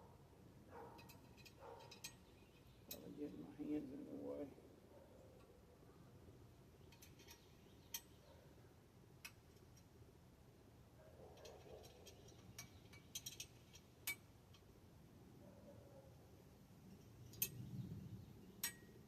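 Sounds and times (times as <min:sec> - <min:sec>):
bicycle parts clicking and tapping: 0:00.9 - 0:03.0, 0:06.8 - 0:08.4, 0:09.2 - 0:09.9, 0:11.4 - 0:14.7, 0:16.9 - 0:17.7, 0:18.6 - 0:19.0.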